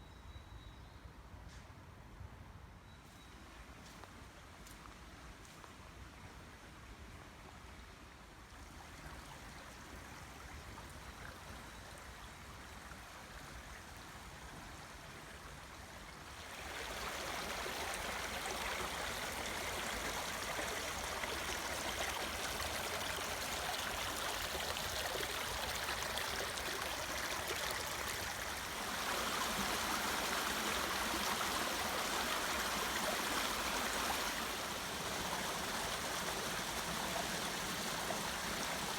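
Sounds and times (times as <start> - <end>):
brook water rushing: 14.7 - 38.9.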